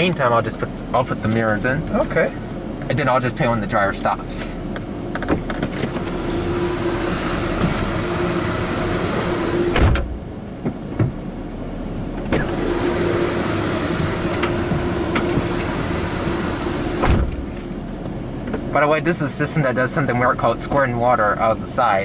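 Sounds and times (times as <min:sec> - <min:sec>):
mirror motor whine: 0:05.7 - 0:10.2, 0:12.2 - 0:17.8.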